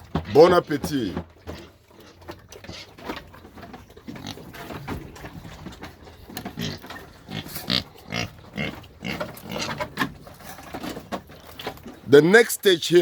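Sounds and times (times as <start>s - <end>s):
pigs grunting and squealing: 0.0s - 12.2s
pigs snuffling and chomping: 0.0s - 13.0s.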